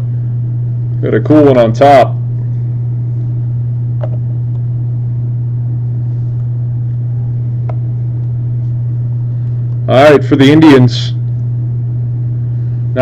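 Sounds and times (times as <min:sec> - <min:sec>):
loud low hum: 0:00.0 - 0:13.0.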